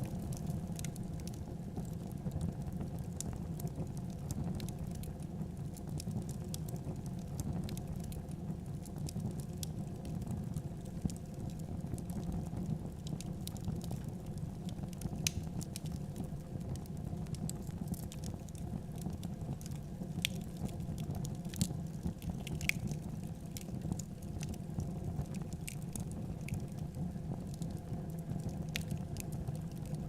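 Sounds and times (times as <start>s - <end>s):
wood fire pops and snaps: 0.0s - 2.4s, 14.6s - 30.0s
low rumble of flames: 0.0s - 30.0s.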